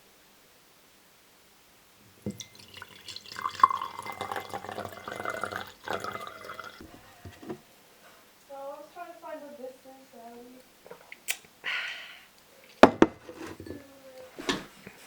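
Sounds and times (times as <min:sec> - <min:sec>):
water pouring with splashes: 0:02.2 - 0:06.9.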